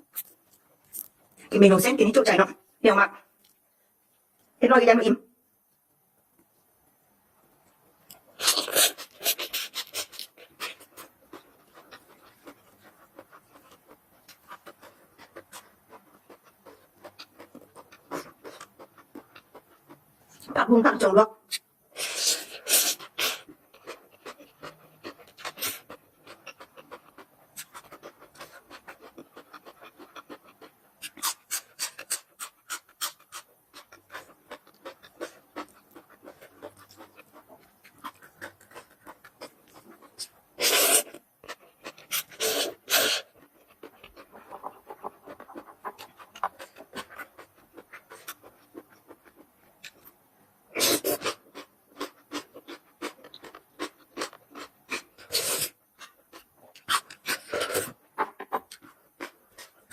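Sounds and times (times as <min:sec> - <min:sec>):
wet chewing clicks: 0:08.1 - 0:20.4, 0:23.0 - 0:40.4, 0:41.0 - 0:50.1
slurping noodles: 0:40.6 - 0:41.2, 0:42.1 - 0:43.3, 0:50.7 - 0:51.4, 0:54.9 - 0:55.8.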